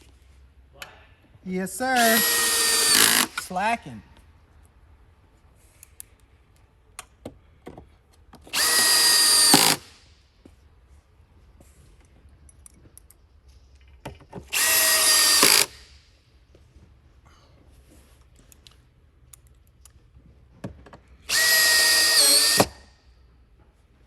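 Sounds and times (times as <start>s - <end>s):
cordless drill driving screws: 1.9s - 3.5s, 8.5s - 9.9s, 14.5s - 15.8s, 21.2s - 22.9s
handling knocks and clicks: 18.3s - 21.2s.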